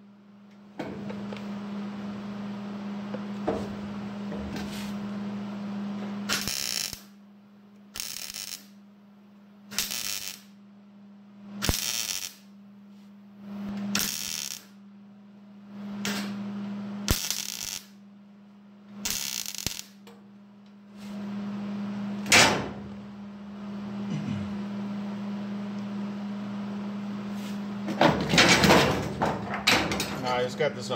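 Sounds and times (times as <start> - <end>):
steady low hum: 0.0 - 30.9
arc welder crackling: 6.0 - 7.2, 7.8 - 8.9, 9.7 - 10.6, 11.5 - 12.6, 13.4 - 14.8, 15.8 - 16.4, 17.0 - 18.0, 18.9 - 20.2.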